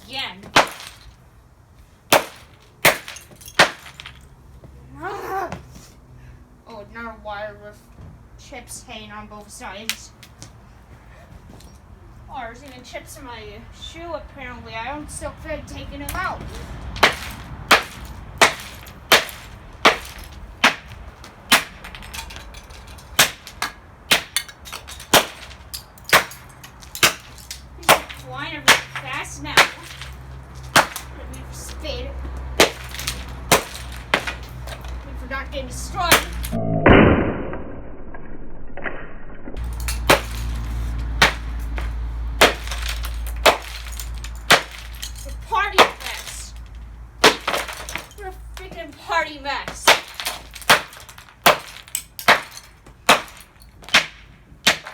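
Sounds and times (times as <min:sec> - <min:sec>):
hammer smashing plastic casing: 0:00.5 - 0:01.2, 0:02.1 - 0:04.2, 0:17.0 - 0:31.2, 0:32.6 - 0:34.9, 0:39.6 - 0:46.6, 0:47.2 - 0:48.2, 0:49.7 - 0:54.9.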